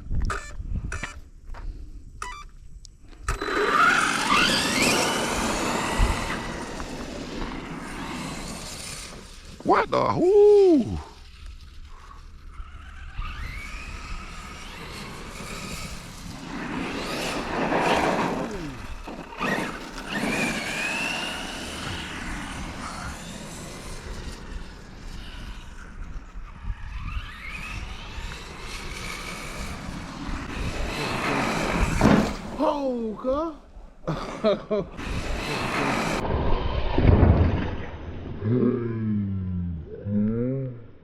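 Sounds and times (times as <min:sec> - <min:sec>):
electric motor whining: 0:03.2 - 0:09.6, 0:11.2 - 0:32.6
low rumble: 0:36.1 - 0:41.0.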